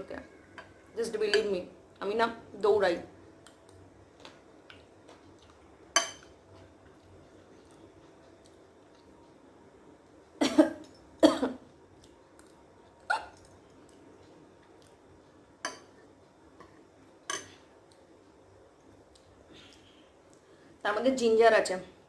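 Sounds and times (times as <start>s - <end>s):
woman coughing: 10.4s - 11.6s.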